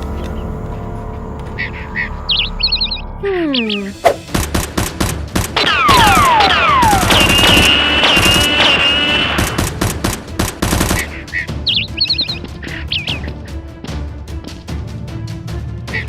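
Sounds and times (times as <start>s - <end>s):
background music: 0.0s - 16.0s
machine-gun fire: 4.3s - 11.3s
falling whistles: 5.6s - 9.6s.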